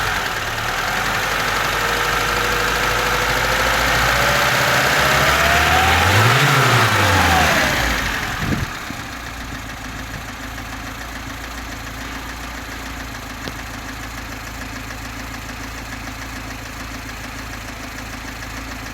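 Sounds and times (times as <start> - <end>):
car engine blipped then idling: 0.0 - 18.9.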